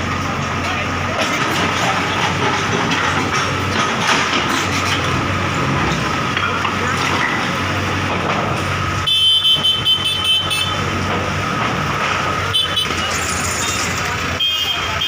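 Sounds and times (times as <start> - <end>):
street traffic: 0.0 - 15.0
vehicle horns honking: 9.0 - 10.9, 12.5 - 15.0.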